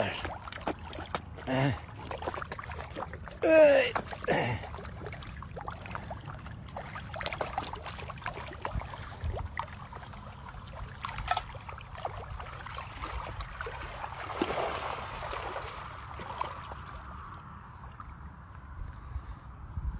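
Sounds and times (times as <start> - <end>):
small water splashes: 0.0 - 18.1
water trickling and lapping: 0.0 - 19.5.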